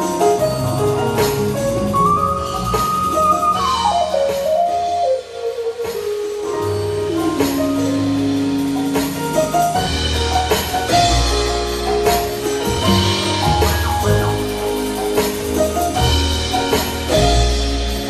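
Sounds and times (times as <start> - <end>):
drum kit: 0.0 - 18.0
keyboard chords: 0.0 - 18.0
electric bass: 6.6 - 18.0
sliding keyboard line: 12.2 - 16.0.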